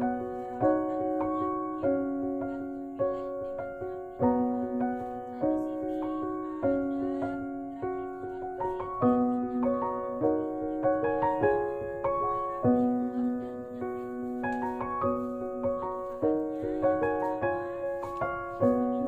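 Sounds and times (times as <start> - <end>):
slow piano music: 0.0 - 19.0.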